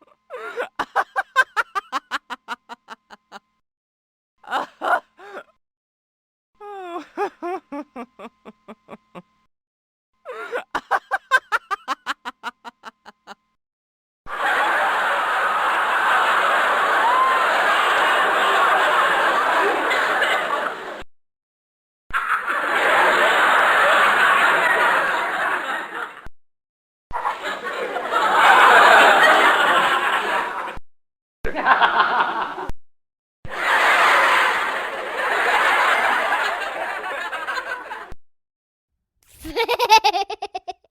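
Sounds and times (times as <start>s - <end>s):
person laughing: 0.0s - 3.5s, 4.4s - 5.6s, 6.6s - 9.4s, 10.2s - 13.5s, 39.3s - 40.9s
crowd laughing: 0.0s - 3.6s, 4.4s - 5.5s, 6.8s - 9.3s, 10.3s - 13.5s, 14.3s - 21.0s, 22.2s - 26.3s, 27.2s - 30.8s, 31.5s - 32.7s, 33.5s - 38.1s, 39.3s - 40.9s.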